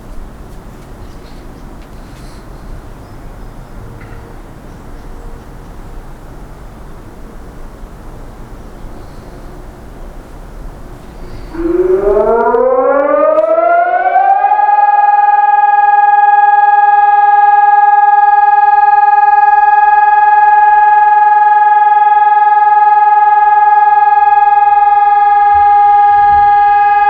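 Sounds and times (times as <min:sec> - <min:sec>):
warning siren: 0:07.1 - 0:27.0.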